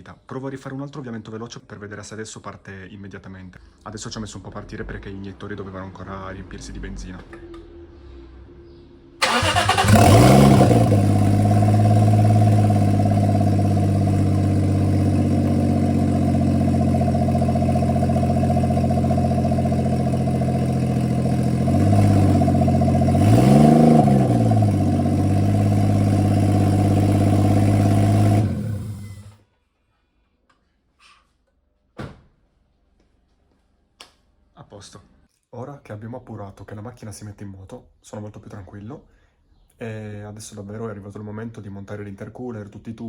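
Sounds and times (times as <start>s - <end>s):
car engine starting and idling: 9.2s - 29.4s
engine revving: 9.2s - 29.4s.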